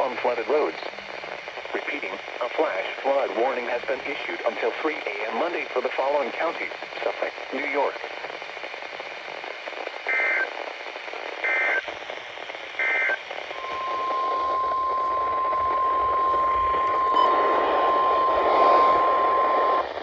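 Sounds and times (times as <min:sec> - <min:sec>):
radio static: 0:00.0 - 0:20.0
steady alarm tone: 0:13.6 - 0:20.0
warbling data tone bursts: 0:13.6 - 0:20.0.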